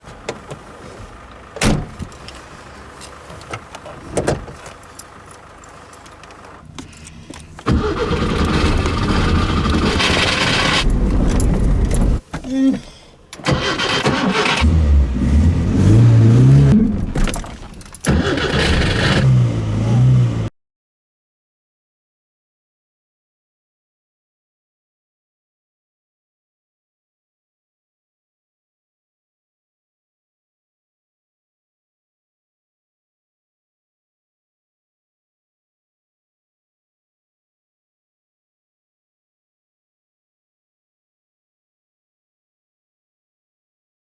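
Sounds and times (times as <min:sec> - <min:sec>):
engine running unevenly and revving: 0:00.1 - 0:12.2, 0:13.5 - 0:20.5
engine cranking by starter: 0:00.1 - 0:20.5.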